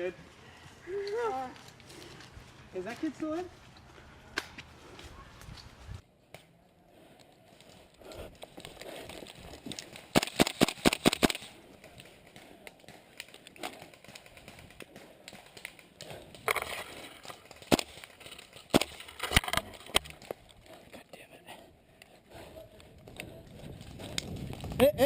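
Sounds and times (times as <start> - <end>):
rustling of movement: 0.0 - 24.8
airsoft rifle shots: 10.1 - 11.6.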